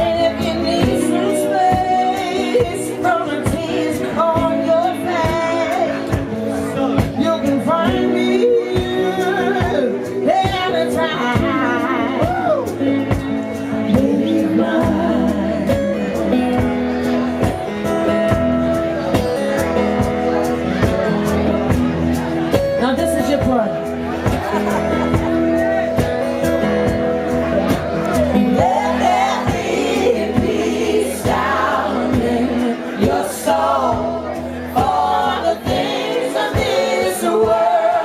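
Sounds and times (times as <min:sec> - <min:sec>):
person singing wordless vocals: 0:00.0 - 0:16.4, 0:28.4 - 0:38.0
drums: 0:00.0 - 0:38.0
guitar: 0:00.0 - 0:38.0.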